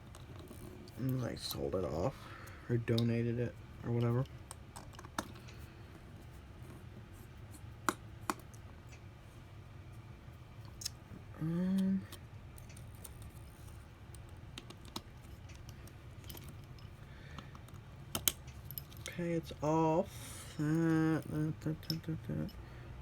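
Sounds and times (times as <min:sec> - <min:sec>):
steady low hum: 0:00.0 - 0:23.0
hand tools clicking and tapping: 0:14.2 - 0:19.1.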